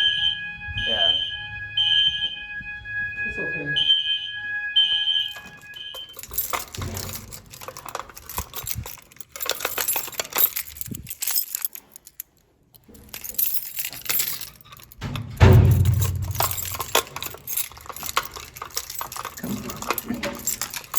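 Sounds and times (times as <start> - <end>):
fire alarm horn blast: 0.0 - 6.2
metallic clinking and rattling: 5.3 - 20.9
heavy thump: 15.0 - 16.8.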